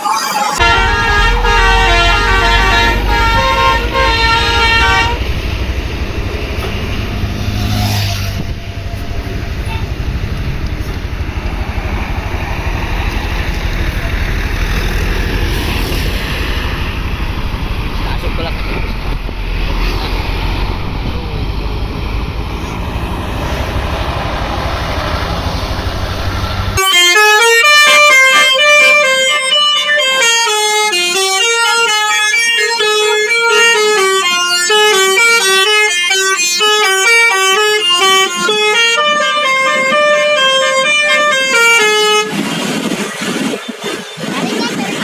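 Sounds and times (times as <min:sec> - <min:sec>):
musical bus air horn: 0:00.6 - 0:05.6, 0:26.8 - 0:42.4
vehicle rumble and road noise: 0:00.6 - 0:45.0.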